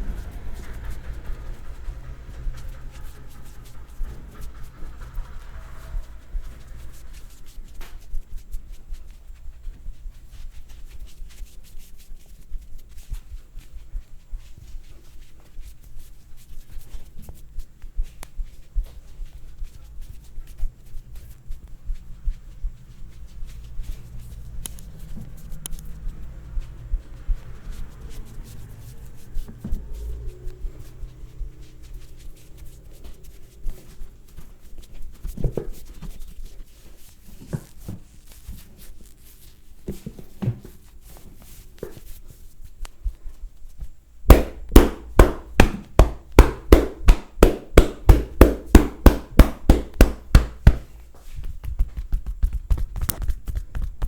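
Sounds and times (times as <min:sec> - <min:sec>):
soft tapping and rubbing: 0:00.0 - 0:54.0
percussive hand strikes: 0:44.3 - 0:50.9.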